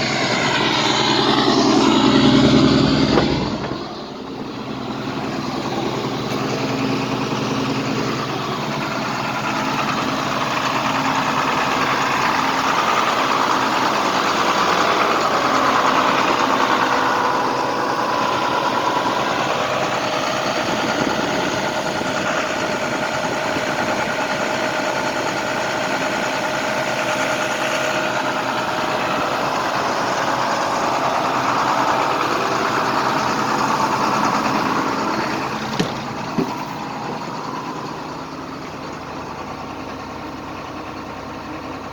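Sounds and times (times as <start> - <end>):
diesel bus engine idling: 0.0 - 41.9.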